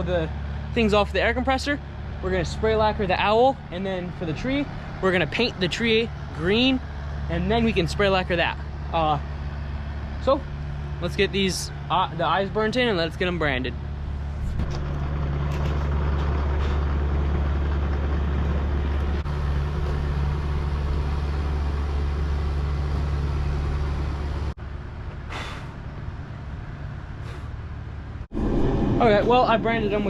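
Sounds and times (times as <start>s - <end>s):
machine running with hum and roar: 0.0s - 30.0s
short hisses: 25.3s - 25.8s.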